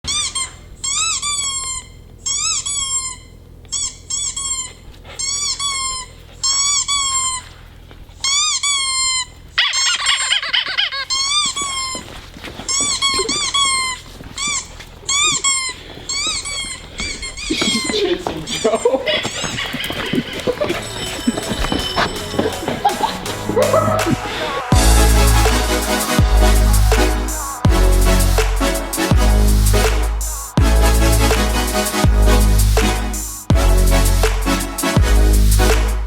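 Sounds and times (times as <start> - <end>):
rubber squeaky toy squeaking: 0.0 - 24.2
rustling: 5.8 - 27.4.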